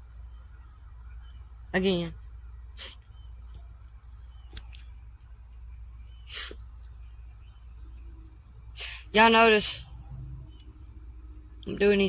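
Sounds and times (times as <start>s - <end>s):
crickets chirring: 0.0s - 12.0s
low steady rumble: 5.1s - 12.0s
soft breathy sounds: 6.2s - 7.5s.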